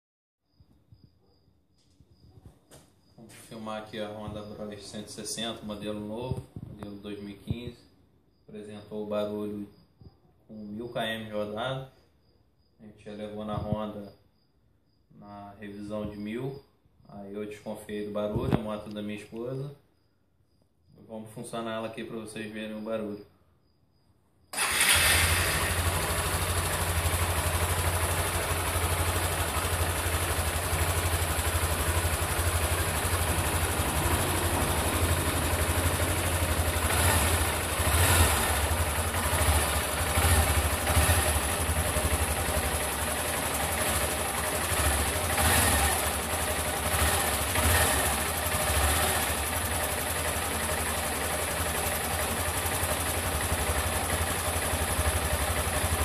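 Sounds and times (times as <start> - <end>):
motorcycle engine idling: 24.6 - 56.0.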